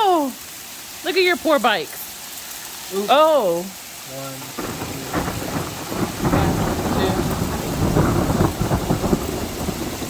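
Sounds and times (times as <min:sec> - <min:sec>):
hail falling: 0:00.0 - 0:10.0
thunder rumbling: 0:04.5 - 0:10.0.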